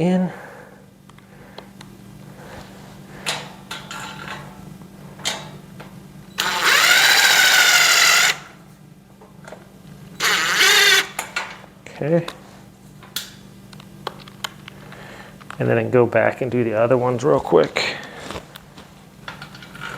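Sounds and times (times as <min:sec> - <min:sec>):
power screwdriver motor whine: 0:06.4 - 0:08.5, 0:10.2 - 0:11.2.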